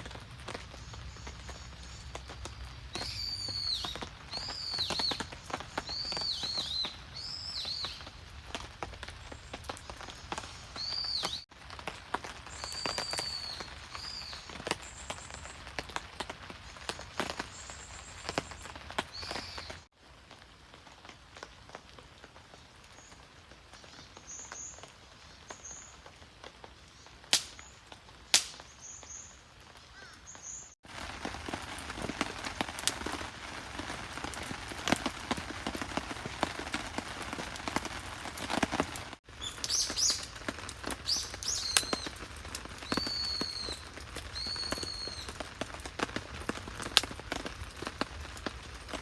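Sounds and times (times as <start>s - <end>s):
small birds chirping: 0.1s - 11.5s, 12.4s - 19.9s, 28.4s - 30.8s, 31.5s - 45.8s
sharp pops: 27.3s - 27.7s, 28.3s - 28.7s
dense crackling patter: 30.8s - 49.0s.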